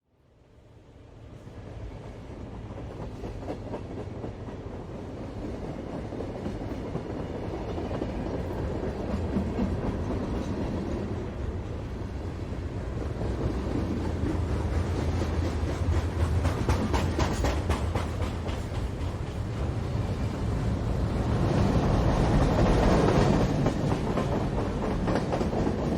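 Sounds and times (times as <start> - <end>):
freight train rumbling: 0.3 - 25.9
wheels clacking on rails: 1.7 - 11.6, 12.6 - 25.9.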